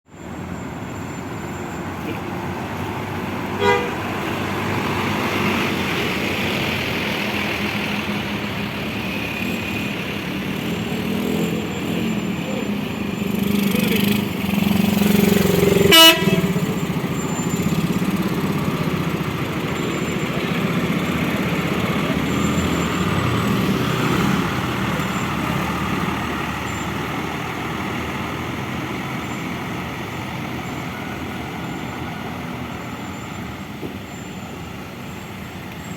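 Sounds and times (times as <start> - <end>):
bus engines running: 0.0 - 35.9
bus horn toots: 3.5 - 4.6, 14.9 - 17.0.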